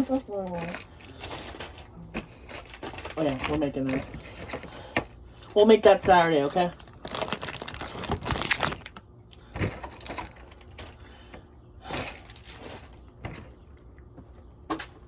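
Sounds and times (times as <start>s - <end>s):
plastic packaging crinkling: 0.0s - 10.9s.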